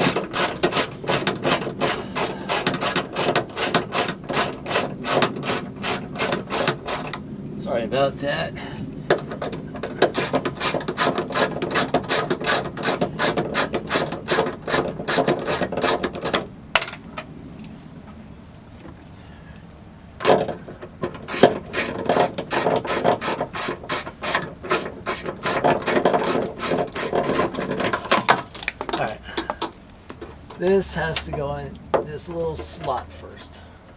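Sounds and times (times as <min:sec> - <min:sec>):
hand ratchet clicking: 0:00.0 - 0:07.2, 0:10.0 - 0:16.4, 0:21.1 - 0:30.2.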